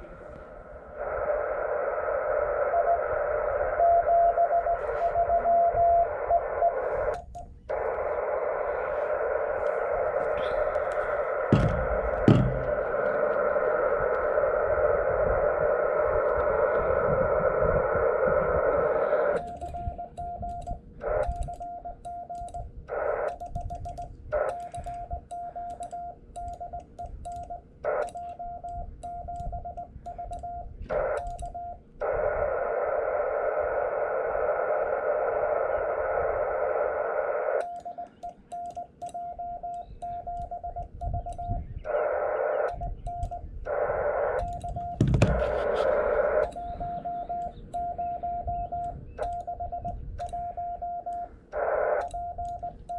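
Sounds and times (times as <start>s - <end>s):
receiver hiss: 0.0s - 52.9s
morse code tone: 3.8s - 12.9s, 18.8s - 31.9s, 37.6s - 52.9s.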